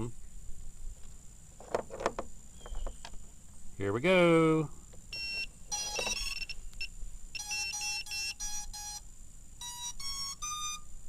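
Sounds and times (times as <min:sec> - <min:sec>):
drone motors beeping tones: 0:05.1 - 0:09.0, 0:09.6 - 0:10.9.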